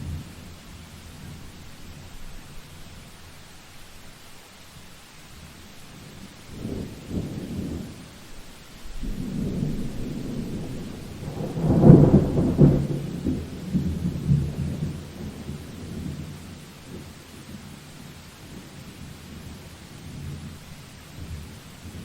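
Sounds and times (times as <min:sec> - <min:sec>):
steady rain: 0:00.0 - 0:22.0
thunder rumbling and crashing: 0:09.0 - 0:15.5.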